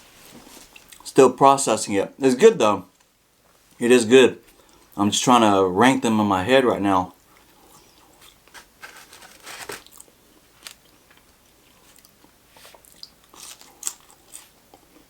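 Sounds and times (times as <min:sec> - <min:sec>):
chewing with wet smacks and crunches: 0:10.7 - 0:15.0.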